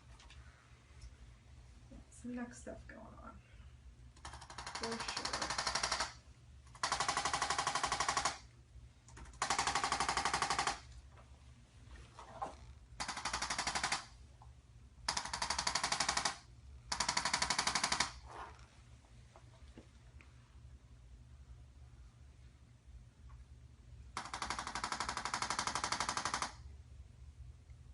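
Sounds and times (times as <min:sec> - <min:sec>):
electric percussion rapid rattle: 0:04.2 - 0:06.1.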